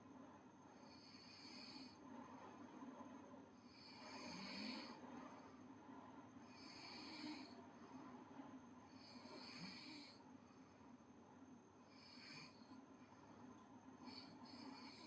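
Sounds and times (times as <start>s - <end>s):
girl snoring softly: 0.7s - 2.0s, 3.6s - 5.1s, 6.4s - 7.8s, 8.9s - 10.4s, 11.8s - 13.2s, 14.0s - 15.0s.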